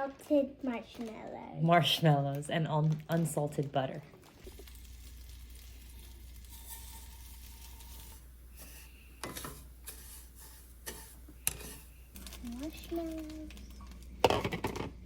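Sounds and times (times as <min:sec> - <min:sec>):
food sizzling in a pan: 0:04.4 - 0:14.4.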